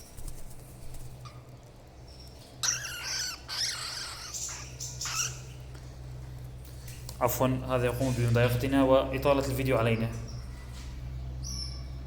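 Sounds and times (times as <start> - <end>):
steady low hum: 0.0 - 12.0
bird squawking: 2.6 - 5.6.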